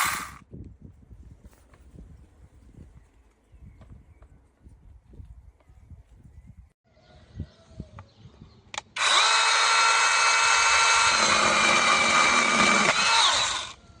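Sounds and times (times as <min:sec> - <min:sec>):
electric chainsaw motor whining: 0:00.0 - 0:00.4, 0:09.0 - 0:13.8.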